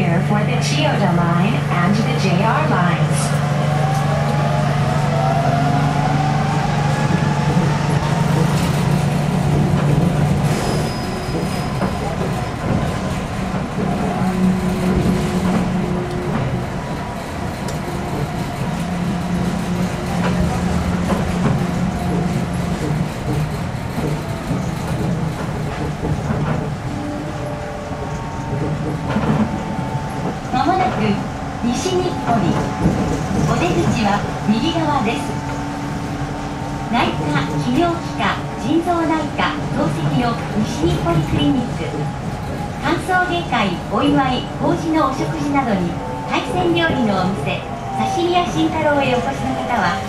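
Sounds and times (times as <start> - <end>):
train drive hum: 0.0 - 50.0
rumble of rubber tyres: 5.8 - 43.2.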